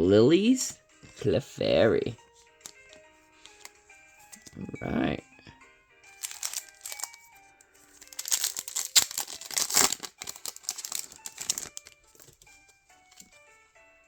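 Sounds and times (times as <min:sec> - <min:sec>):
light background music: 0:00.0 - 0:14.0
foil pack crinkling and tearing: 0:06.2 - 0:07.3, 0:07.9 - 0:12.4.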